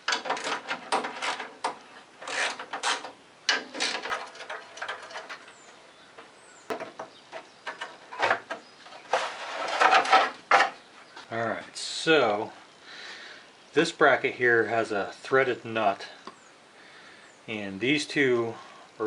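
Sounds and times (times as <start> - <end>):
plastic parts scraping and knocking: 0.0 - 10.8.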